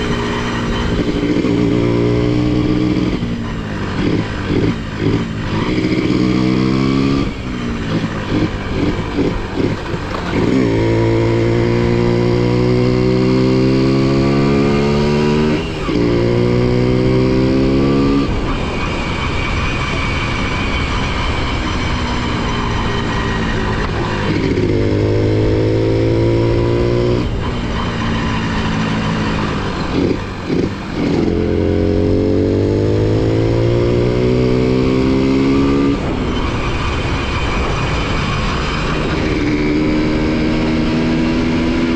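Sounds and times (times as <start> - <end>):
motorcycle engine revving: 0.0 - 41.9.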